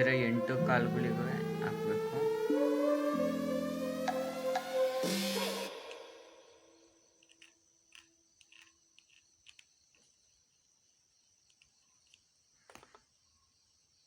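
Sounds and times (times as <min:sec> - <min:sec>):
small clicks and taps: 0:07.2 - 0:10.2.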